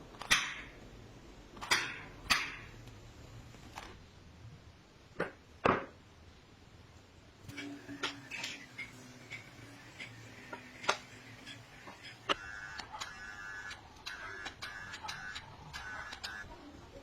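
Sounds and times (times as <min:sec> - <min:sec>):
faint steady hum: 0:00.0 - 0:17.0
high buzzing tone: 0:07.5 - 0:16.5.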